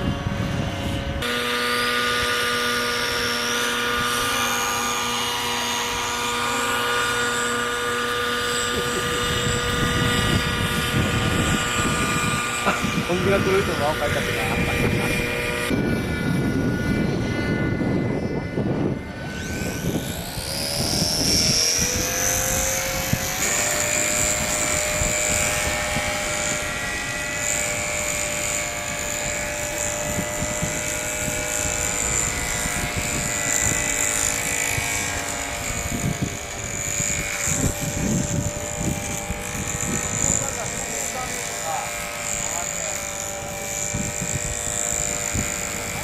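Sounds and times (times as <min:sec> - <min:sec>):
model propeller motor whining: 0:00.0 - 0:46.0.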